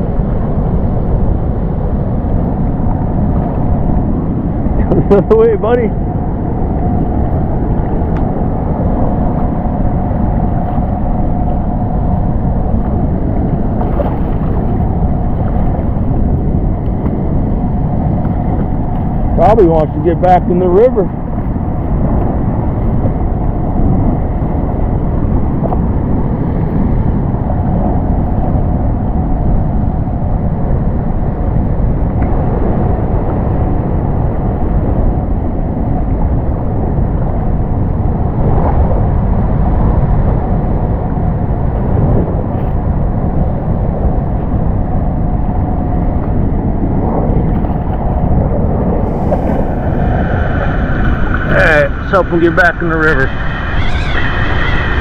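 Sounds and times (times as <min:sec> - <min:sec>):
wind buffeting microphone: 0:00.0 - 0:55.0
floodwater rushing: 0:48.9 - 0:55.0.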